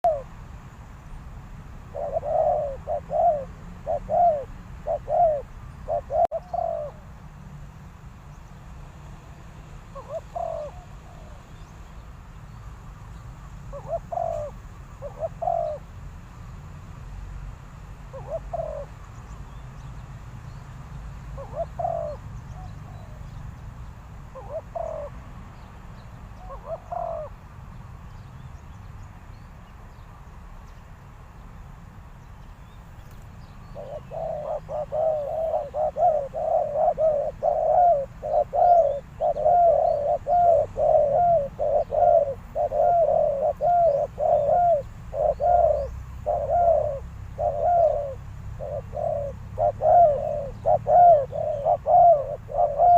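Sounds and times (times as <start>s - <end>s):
dove cooing: 0.0s - 0.4s, 1.9s - 7.1s, 9.9s - 11.5s, 13.7s - 15.9s, 18.1s - 19.0s, 21.4s - 23.3s, 24.3s - 25.2s, 26.4s - 27.4s, 33.7s - 52.9s.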